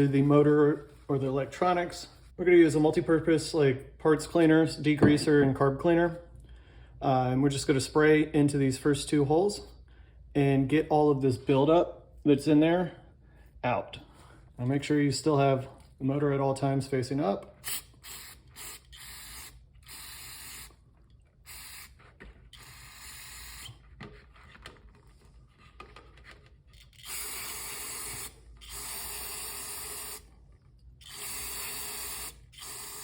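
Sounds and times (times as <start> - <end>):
aerosol can spraying: 17.6 - 20.8, 21.5 - 22.0, 22.6 - 23.7, 31.0 - 33.0.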